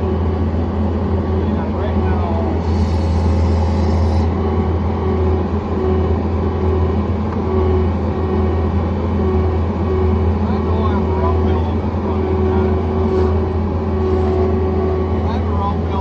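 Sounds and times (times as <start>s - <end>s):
skid steer engine running: 0.0s - 16.0s.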